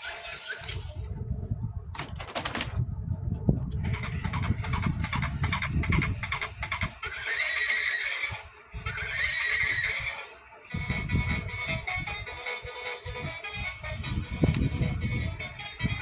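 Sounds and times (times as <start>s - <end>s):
horse whinnying: 7.0s - 10.2s.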